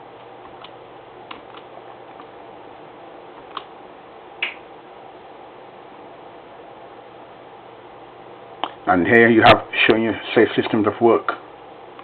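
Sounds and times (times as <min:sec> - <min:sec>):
steady low hiss: 0:00.0 - 0:12.0
sharp clicks: 0:03.4 - 0:03.7, 0:04.4 - 0:04.6.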